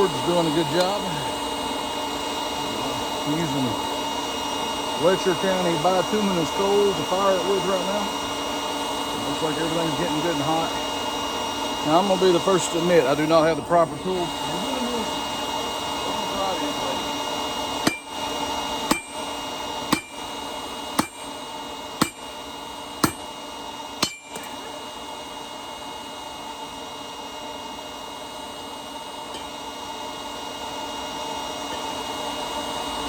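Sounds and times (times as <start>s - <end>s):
steady background hum: 0.0s - 33.0s
hammer striking metal on anvil: 17.8s - 18.2s, 18.9s - 19.2s, 19.9s - 20.3s, 21.0s - 21.3s, 22.0s - 22.3s, 23.0s - 23.3s, 24.0s - 24.6s.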